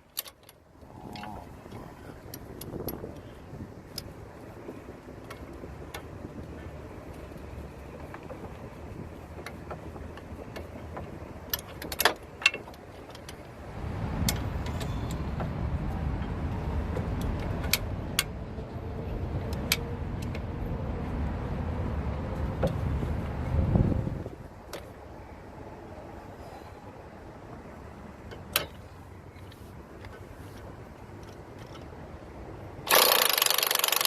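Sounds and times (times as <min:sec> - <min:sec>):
low rumble: 0:13.6 - 0:24.4.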